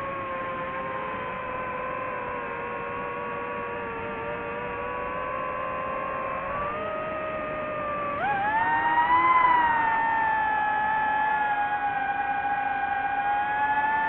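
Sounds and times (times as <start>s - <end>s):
drone propellers whining: 0.0s - 14.0s.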